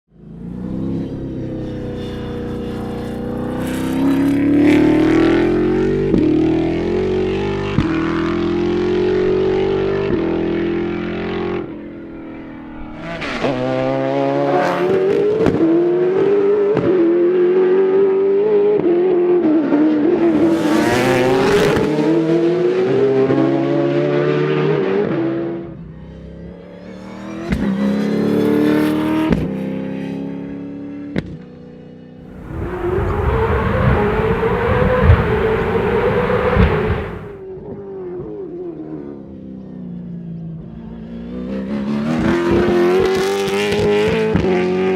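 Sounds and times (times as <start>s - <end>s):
race car engine revving: 32.3s - 37.4s.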